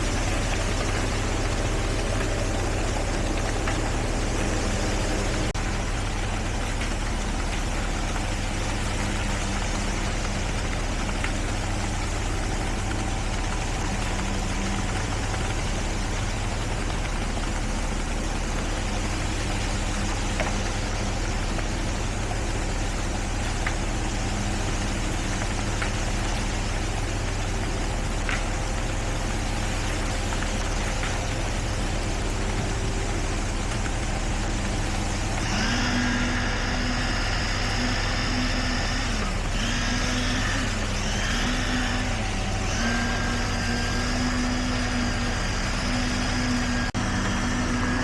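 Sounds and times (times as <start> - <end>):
heavy diesel engine running: 0.0 - 48.0.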